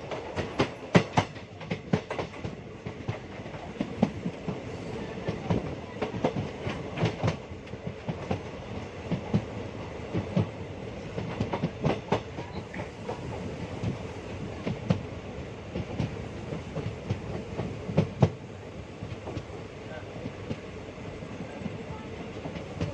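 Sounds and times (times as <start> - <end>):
train coaches rumbling on rails: 0.0 - 22.9.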